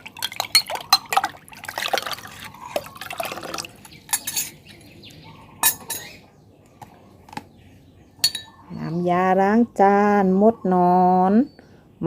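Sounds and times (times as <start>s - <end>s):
liquid pouring into water: 0.0s - 4.0s
containers clinking and knocking: 0.0s - 4.9s.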